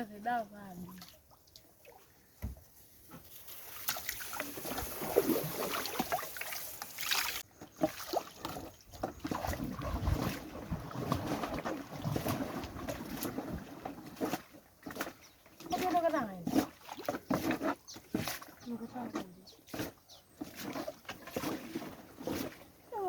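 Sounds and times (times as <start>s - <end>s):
canoe paddling splashes: 0.8s - 23.0s.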